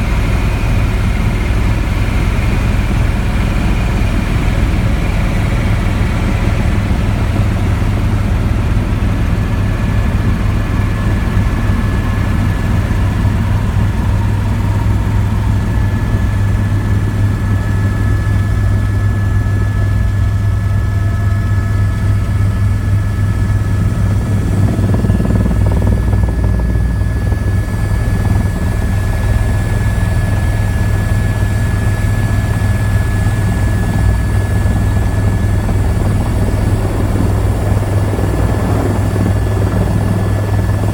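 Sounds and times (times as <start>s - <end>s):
helicopter engine and rotor: 0.0s - 40.9s.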